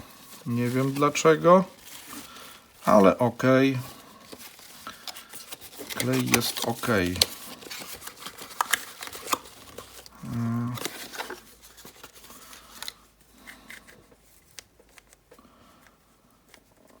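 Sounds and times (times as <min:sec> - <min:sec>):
packaging rustling: 0:00.0 - 0:17.0
man humming: 0:10.2 - 0:11.0.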